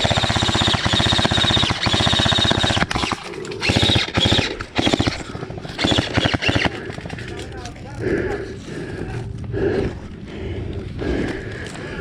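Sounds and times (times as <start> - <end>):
airsoft guns firing full-auto: 0.0 - 7.5
gearbox whirring: 0.0 - 7.7.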